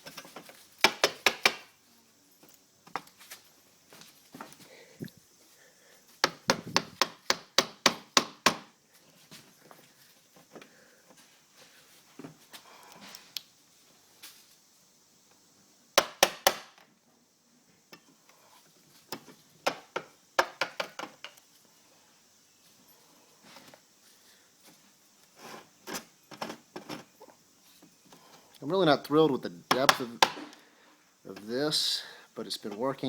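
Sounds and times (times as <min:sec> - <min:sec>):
chisel tapping wood: 0:00.8 - 0:01.6, 0:06.2 - 0:08.6, 0:29.7 - 0:30.5.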